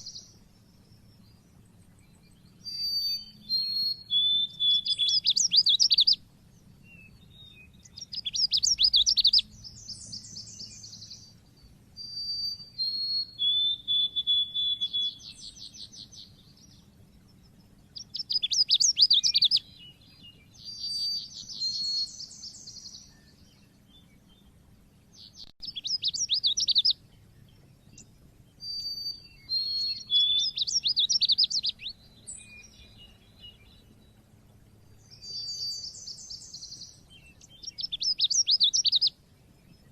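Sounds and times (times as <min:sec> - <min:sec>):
bird chattering trills: 0:18.0 - 0:19.6, 0:25.6 - 0:27.0, 0:28.6 - 0:32.8, 0:35.3 - 0:39.1.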